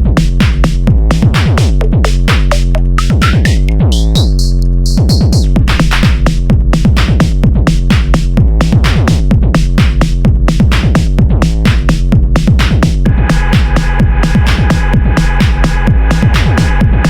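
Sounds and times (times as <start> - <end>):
electronic music: 0.0 - 7.4, 11.5 - 17.0
rising synth sweep: 13.1 - 17.0.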